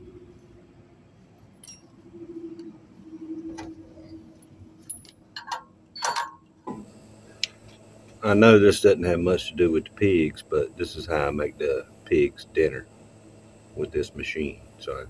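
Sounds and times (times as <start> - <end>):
faint steady hum: 0.0 - 15.0
metal parts clinking: 1.6 - 1.9, 4.8 - 6.5.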